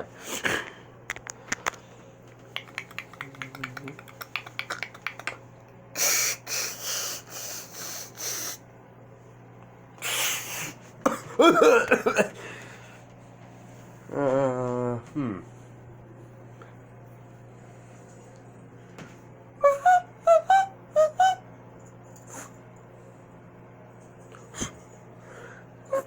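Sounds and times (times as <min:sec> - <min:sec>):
mouth clicks: 0:02.5 - 0:05.4
breathy mouth hissing: 0:06.0 - 0:08.6, 0:10.0 - 0:10.8.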